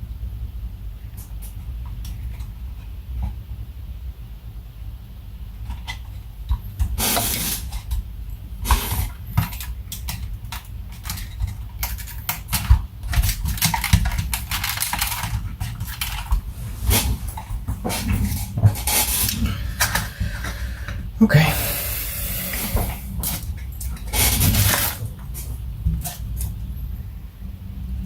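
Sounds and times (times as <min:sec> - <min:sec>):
plastic parts clicking and rustling: 0:08.6 - 0:20.6.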